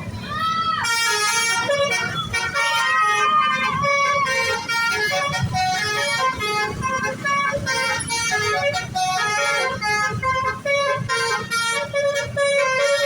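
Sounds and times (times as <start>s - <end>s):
musical bus horn melody: 0.8s - 13.0s.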